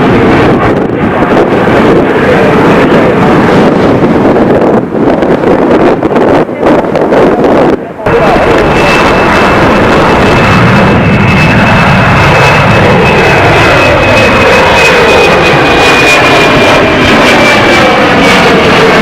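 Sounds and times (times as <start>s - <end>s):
jet airliner engines passing: 0.0s - 19.0s.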